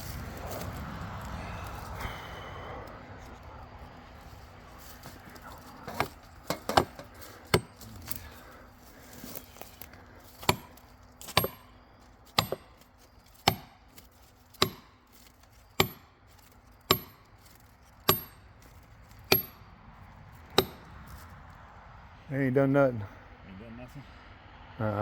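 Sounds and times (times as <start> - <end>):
hammer striking steel wedge: 5.9 - 7.8, 10.4 - 11.7, 12.3 - 12.8, 13.4 - 13.8, 14.6 - 15.0, 15.8 - 16.2, 16.9 - 17.2, 18.1 - 18.4, 19.3 - 19.6, 20.6 - 20.9.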